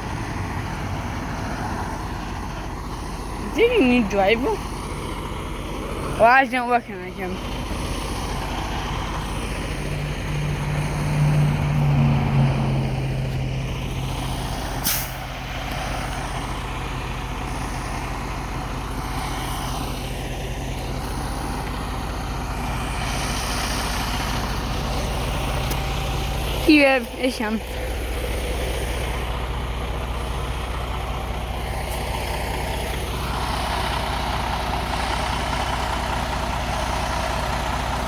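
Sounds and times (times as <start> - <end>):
diesel truck engine droning: 0.0 - 38.0
air brakes hissing: 7.4 - 11.3, 13.9 - 26.3.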